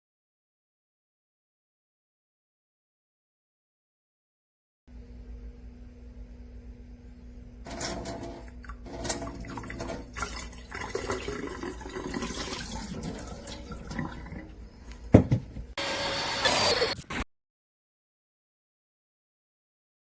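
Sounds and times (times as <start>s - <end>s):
water running and splashing: 7.7s - 14.6s.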